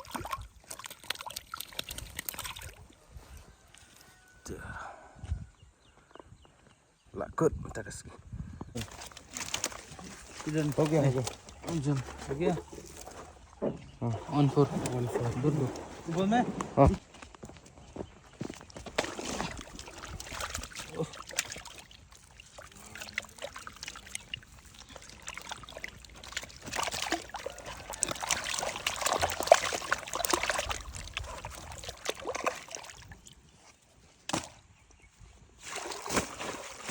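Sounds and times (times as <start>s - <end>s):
water sloshing and splashing: 0.0s - 3.2s, 8.8s - 17.0s, 18.7s - 34.5s, 35.6s - 36.9s.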